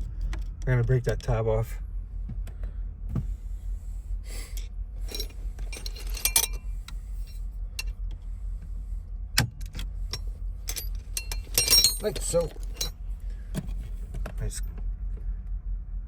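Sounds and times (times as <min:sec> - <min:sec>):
low hum: 0:00.0 - 0:16.0
hand tools clicking and scraping metal: 0:05.0 - 0:07.9, 0:10.1 - 0:13.0.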